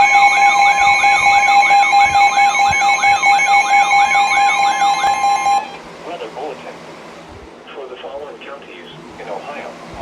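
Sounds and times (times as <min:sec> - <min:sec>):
two steady alert tones: 0:00.0 - 0:05.8.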